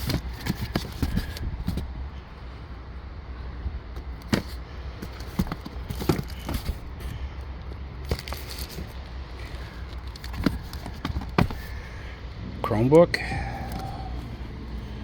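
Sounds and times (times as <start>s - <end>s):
cardboard boxes knocking and sliding: 0.0s - 1.9s, 4.2s - 6.9s, 10.1s - 11.9s
low steady hum: 0.0s - 15.0s.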